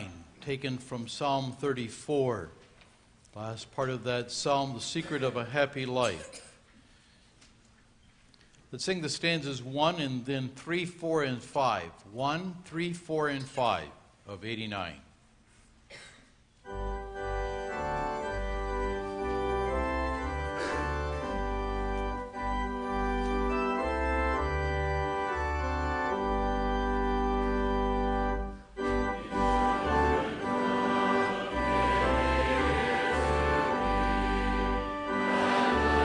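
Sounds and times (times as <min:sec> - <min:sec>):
church organ playing chords: 0:16.6 - 0:36.0.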